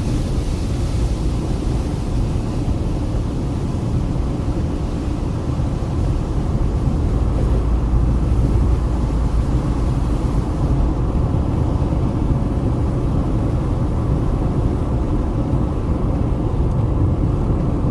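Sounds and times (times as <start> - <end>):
tyre and road noise: 5.7 - 17.9.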